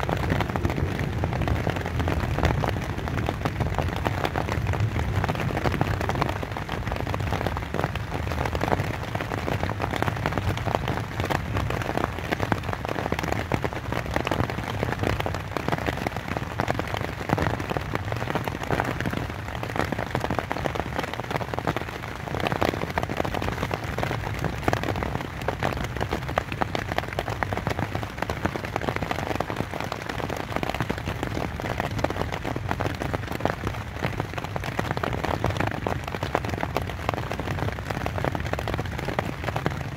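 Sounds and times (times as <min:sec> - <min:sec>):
rain pattering on tent fabric: 0:00.0 - 0:39.9.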